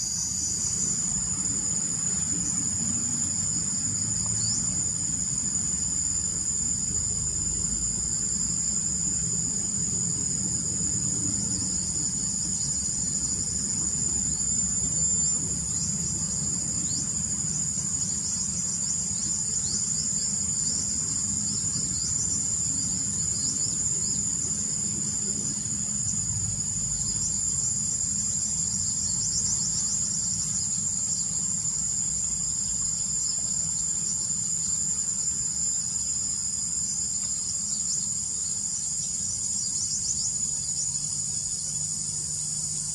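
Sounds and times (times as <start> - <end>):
insect short chirps: 0.0 - 42.9
insects holding shrill tones: 13.0 - 19.8.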